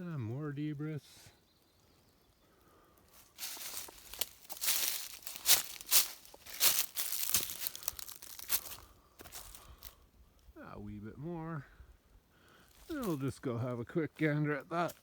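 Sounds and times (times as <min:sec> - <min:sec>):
footsteps crunching on loose rock: 0:03.1 - 0:10.0.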